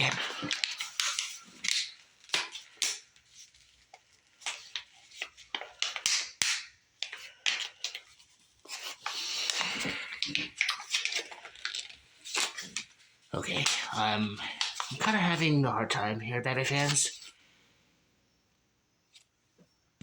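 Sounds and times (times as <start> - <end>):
packaging being opened by hand: 0.0 - 15.6.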